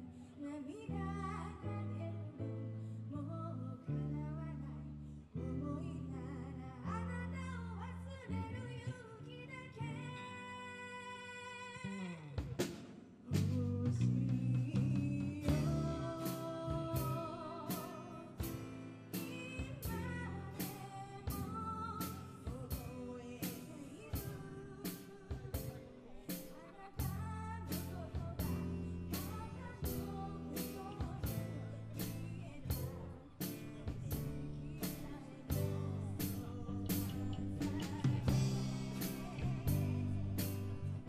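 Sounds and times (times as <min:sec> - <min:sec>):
person singing: 0:00.0 - 0:41.0
drum hits keeping beat: 0:24.2 - 0:41.0
live band playing: 0:24.2 - 0:41.0.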